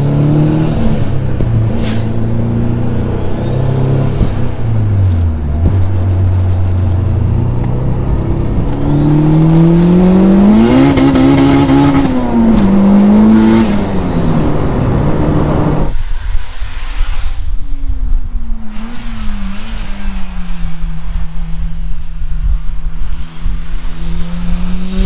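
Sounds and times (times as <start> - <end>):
car engine revving: 0.0 - 15.9.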